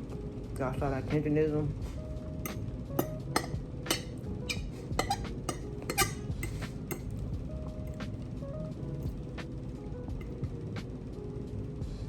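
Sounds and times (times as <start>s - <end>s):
cutlery clinking against plate: 2.4s - 8.2s.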